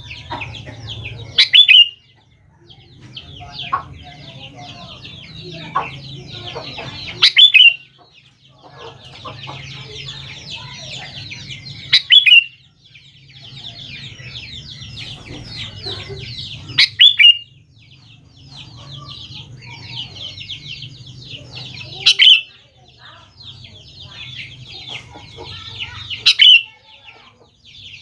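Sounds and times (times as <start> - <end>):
bird chattering calls: 0.0 - 2.2, 3.2 - 28.0.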